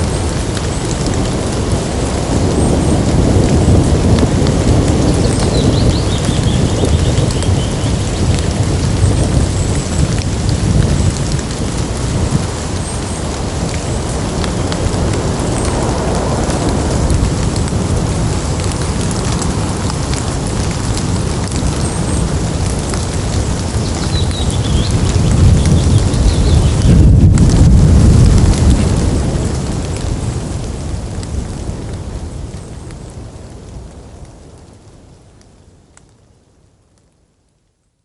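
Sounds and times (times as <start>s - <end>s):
low thunder rumble: 0.0s - 33.8s
rain dripping from leaves: 0.0s - 38.0s.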